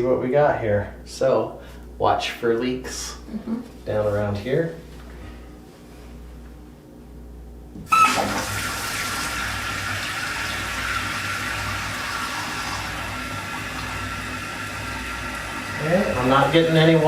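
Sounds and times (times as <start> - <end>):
water rushing into toilet tank: 7.9 - 17.0.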